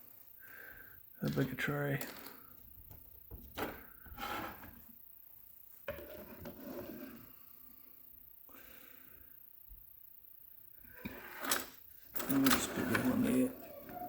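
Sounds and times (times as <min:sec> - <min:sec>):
small lock parts rattling: 0:11.4 - 0:14.0.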